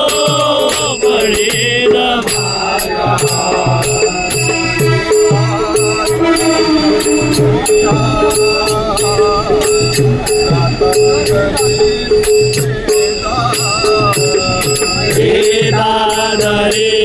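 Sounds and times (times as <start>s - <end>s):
drum beats: 0.0s - 17.0s
jingling percussion: 0.0s - 17.0s
held drone note: 0.9s - 17.0s
gliding melody: 1.0s - 17.0s.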